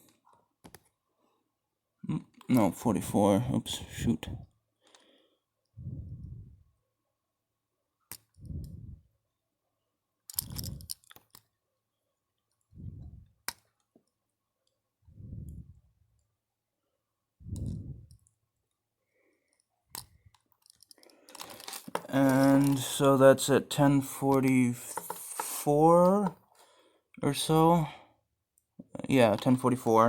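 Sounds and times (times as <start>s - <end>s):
breath puffs on microphone: 5.8s - 6.6s.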